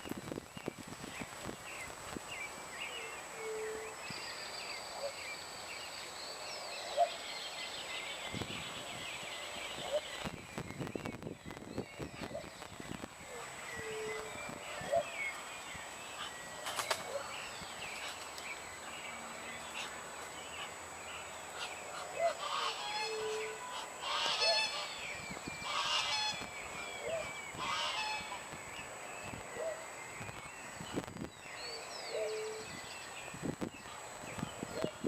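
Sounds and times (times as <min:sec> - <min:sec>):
harsh bird calls: 0:06.9 - 0:35.0
waterfowl calling: 0:21.5 - 0:25.0, 0:25.6 - 0:28.5.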